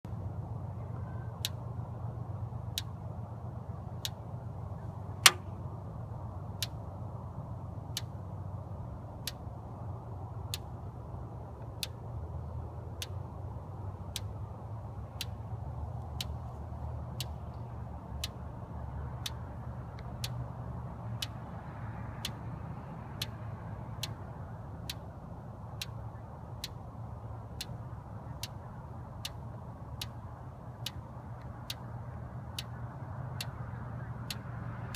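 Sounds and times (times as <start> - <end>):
steady low rumble: 0.0 - 34.9
sharp ice ticks: 10.4 - 10.9, 11.6 - 12.2, 12.9 - 13.4, 19.2 - 20.5, 21.2 - 24.2, 24.8 - 26.9, 29.2 - 34.9.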